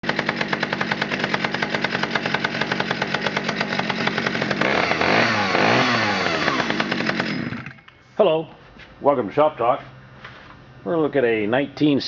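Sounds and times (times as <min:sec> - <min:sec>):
chainsaw idling and revving: 0:00.0 - 0:07.9.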